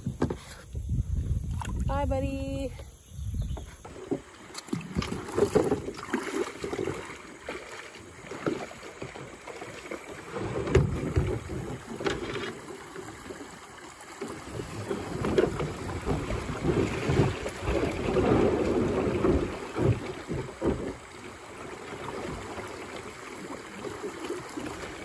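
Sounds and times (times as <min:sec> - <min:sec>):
wind buffeting microphone: 0:00.0 - 0:03.9, 0:14.5 - 0:21.1
water splashing around kayak: 0:00.0 - 0:25.0
knocks against kayak hull: 0:03.4 - 0:06.1, 0:10.6 - 0:12.4, 0:14.9 - 0:21.2.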